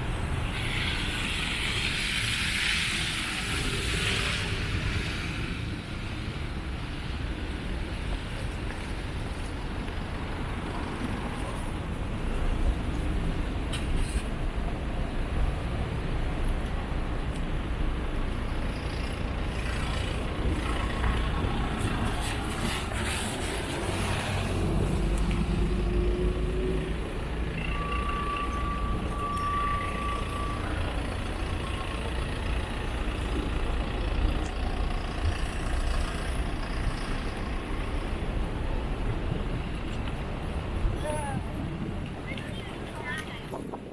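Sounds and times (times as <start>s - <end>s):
heavy truck engine rumbling: 0.0s - 43.9s
street traffic: 0.0s - 43.9s
steady high beep: 27.6s - 31.2s.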